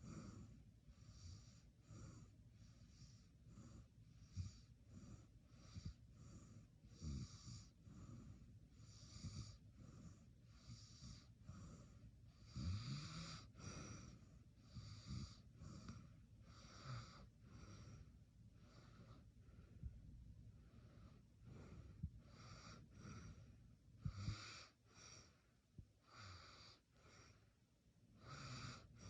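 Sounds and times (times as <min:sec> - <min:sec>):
snorts: 0:02.9 - 0:17.9.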